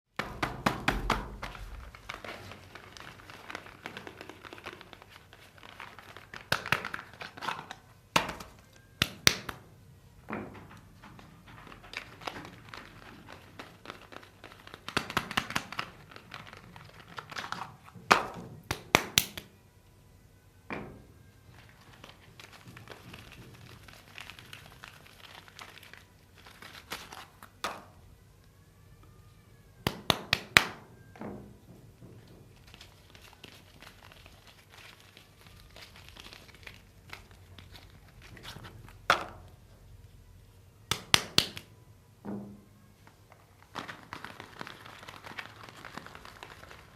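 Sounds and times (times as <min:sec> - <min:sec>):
packaging crinkling and tearing: 0:00.2 - 0:09.6, 0:10.6 - 0:19.6, 0:21.3 - 0:28.1, 0:32.4 - 0:39.8, 0:42.9 - 0:46.9
sharp snaps and taps: 0:13.8 - 0:19.5, 0:29.8 - 0:30.8, 0:40.9 - 0:41.7.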